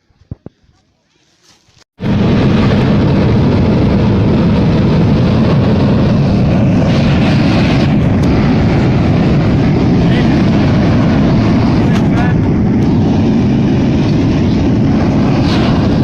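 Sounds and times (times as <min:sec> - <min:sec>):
volcanic crater venting gas roar: 0:02.0 - 0:16.0.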